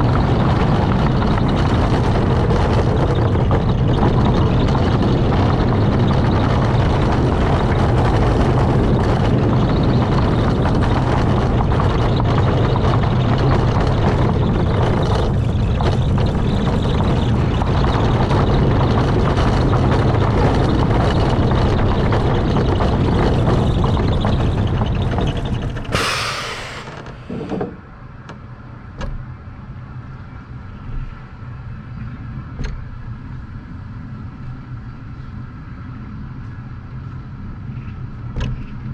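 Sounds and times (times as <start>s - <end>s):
roller coaster wind and rumble: 0.0s - 38.9s
brakes hissing: 25.9s - 27.8s.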